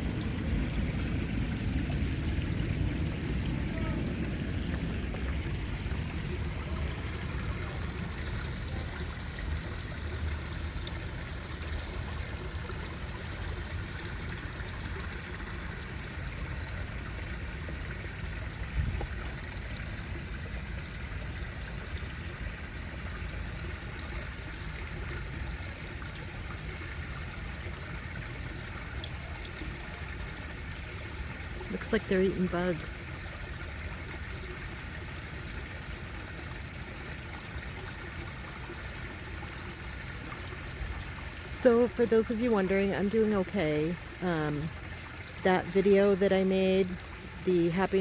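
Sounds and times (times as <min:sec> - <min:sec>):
low rumble: 0:00.0 - 0:09.5
water trickling in pond: 0:00.0 - 0:48.0.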